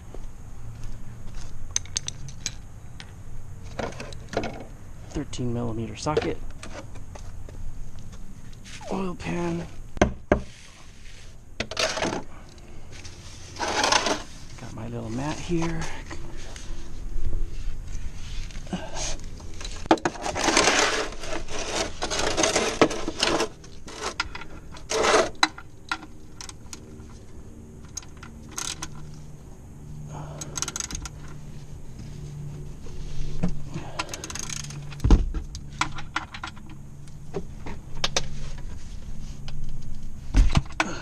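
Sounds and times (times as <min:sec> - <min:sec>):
shuffling and scuffing: 0:07.2 - 0:09.8, 0:10.4 - 0:11.4
metal tools clinking and scraping: 0:33.8 - 0:35.0.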